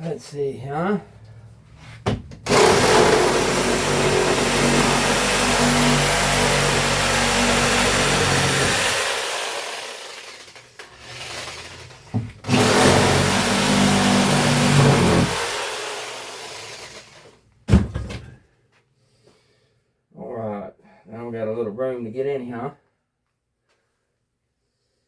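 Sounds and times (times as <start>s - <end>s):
reciprocating saw cutting wood: 2.5s - 17.2s.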